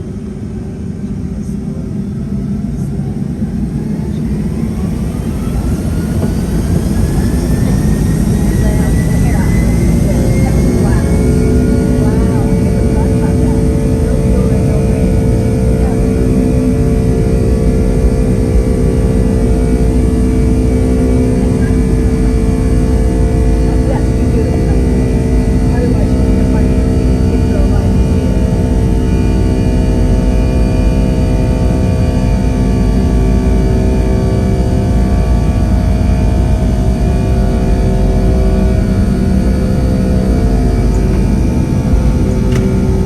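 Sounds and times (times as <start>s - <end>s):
jet engines spooling up: 0.0s - 43.0s.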